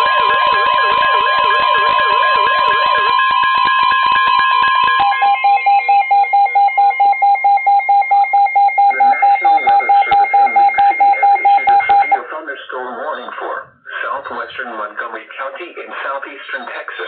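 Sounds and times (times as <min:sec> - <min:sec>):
loud pulsing beep: 0:00.0 - 0:12.2
long steady alert tone: 0:00.0 - 0:12.3
faint broadcast voice: 0:08.8 - 0:17.0.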